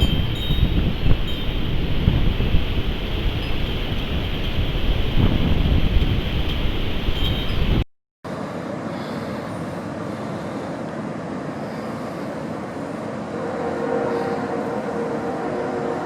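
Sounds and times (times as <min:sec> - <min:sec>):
wind on microphone: 0:00.0 - 0:07.8.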